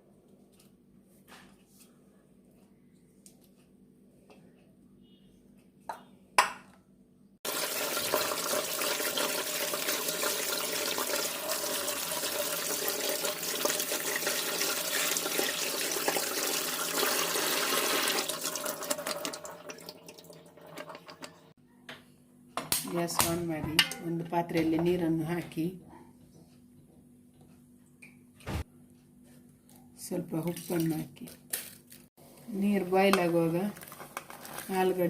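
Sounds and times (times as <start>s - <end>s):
tap water running onto potatoes: 7.5s - 21.3s.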